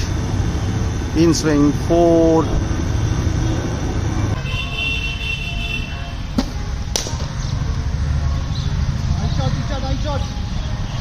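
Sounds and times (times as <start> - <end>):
bat striking cricket ball: 6.4 - 7.4.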